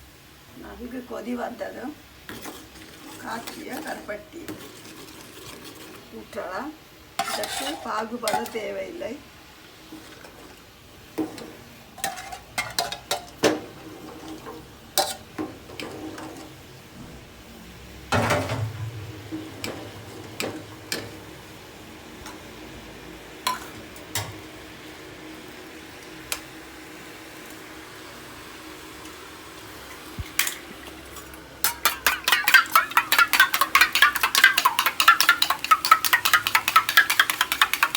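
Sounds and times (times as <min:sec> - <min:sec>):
utensil scraping cooking pot: 0:02.2 - 0:06.3, 0:07.2 - 0:08.8, 0:11.2 - 0:16.6, 0:31.1 - 0:37.9.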